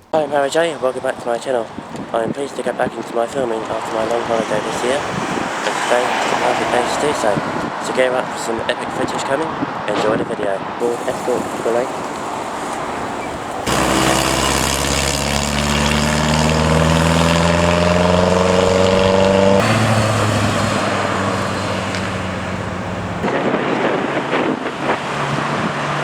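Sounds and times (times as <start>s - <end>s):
traffic noise: 0.0s - 26.0s
car engine accelerating: 13.6s - 23.5s.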